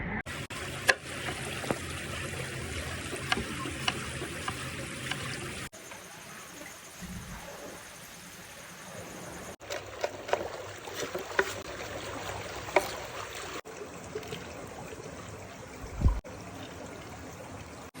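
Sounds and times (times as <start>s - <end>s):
water trickling: 0.3s - 18.0s
low thump: 15.9s - 16.2s.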